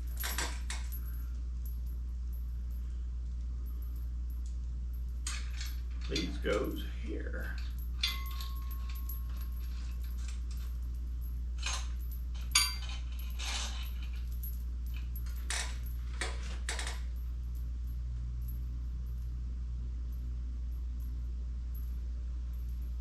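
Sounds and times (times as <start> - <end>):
metallic clinks of steel parts: 0.0 - 2.4, 3.6 - 17.7
steady low hum: 0.0 - 23.0.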